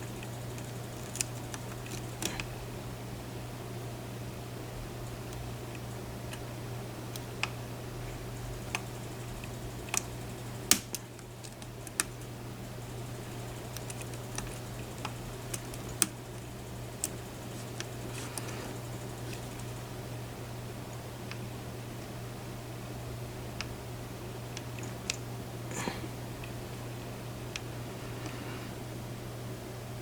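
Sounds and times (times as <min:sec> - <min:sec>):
steady low hum: 0:00.0 - 0:30.0
lock pick clicks: 0:08.7 - 0:12.3.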